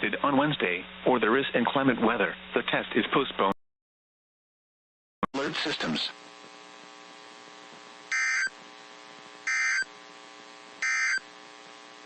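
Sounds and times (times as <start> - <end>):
digital data bursts: 8.1 - 8.5, 9.5 - 9.9, 10.8 - 11.2.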